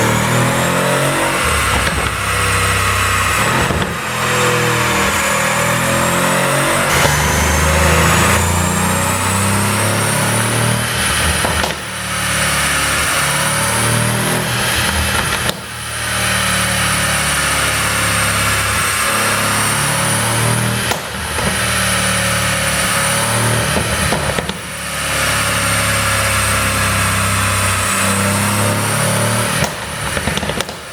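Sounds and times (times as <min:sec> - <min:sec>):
car engine under load: 0:00.0 - 0:30.9
exhaust pops and crackles: 0:01.4 - 0:04.3, 0:11.0 - 0:12.4, 0:14.2 - 0:15.8, 0:20.6 - 0:22.0, 0:22.6 - 0:24.8, 0:29.3 - 0:30.9.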